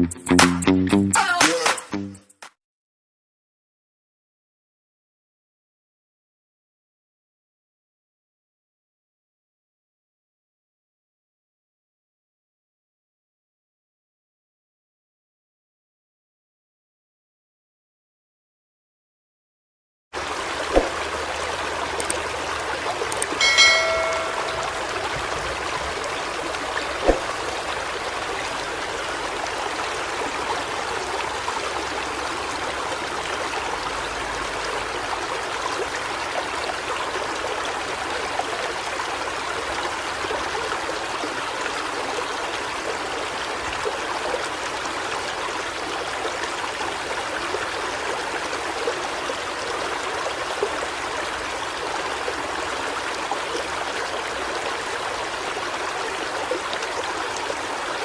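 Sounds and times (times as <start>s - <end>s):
flowing water rushing: 20.2s - 58.0s.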